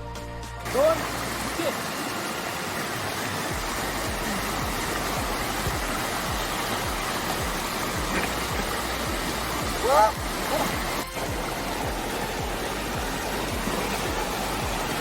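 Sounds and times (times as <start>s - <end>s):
waterfall rushing: 0.6s - 15.0s.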